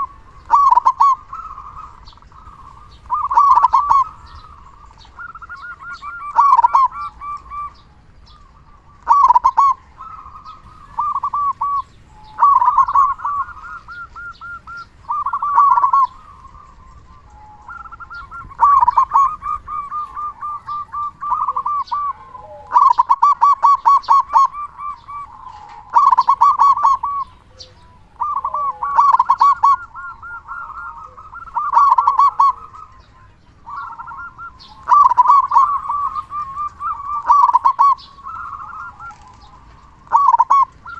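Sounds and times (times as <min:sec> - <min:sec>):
dove cooing: 0:00.0 - 0:40.9.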